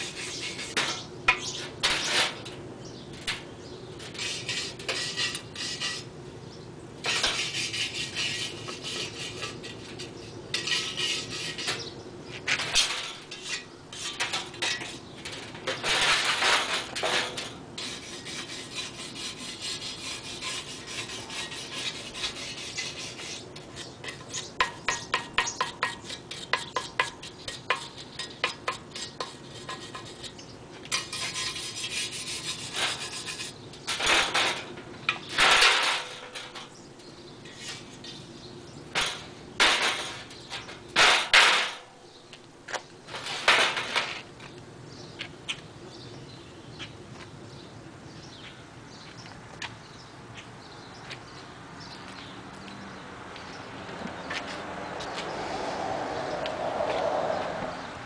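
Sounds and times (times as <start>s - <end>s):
scraping on metal: 0.0s - 6.2s, 7.0s - 36.8s, 37.4s - 38.3s, 38.9s - 41.9s, 42.7s - 44.6s.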